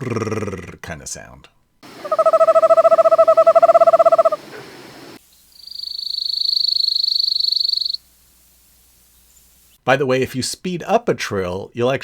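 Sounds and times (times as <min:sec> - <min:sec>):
high bird trill: 0:01.8 - 0:08.0
low bird trill: 0:01.9 - 0:08.0.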